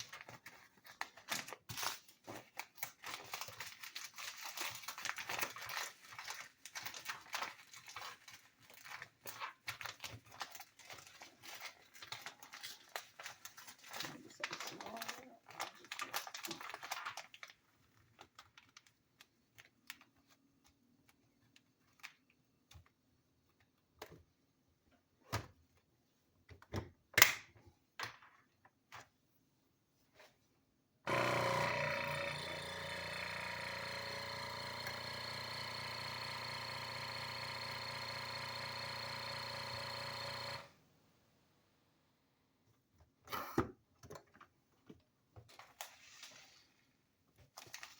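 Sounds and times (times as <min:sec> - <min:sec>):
vacuum sealer pump droning: 0:31.1 - 0:40.8.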